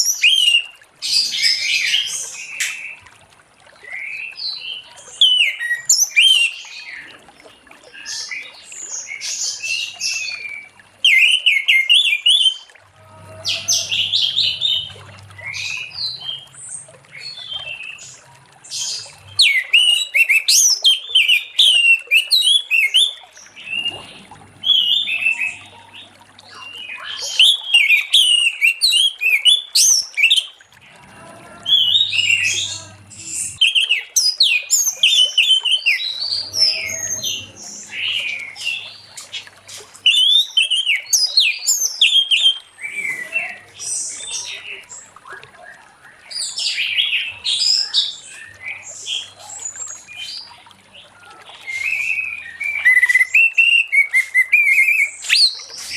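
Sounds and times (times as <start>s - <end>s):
thrush singing whistled phrases: 31.7s - 39.4s, 51.6s - 55.9s.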